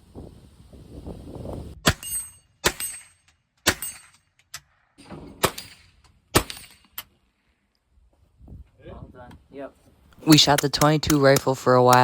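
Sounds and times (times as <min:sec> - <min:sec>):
rifle gunshots: 0:02.6 - 0:04.1, 0:05.0 - 0:06.8.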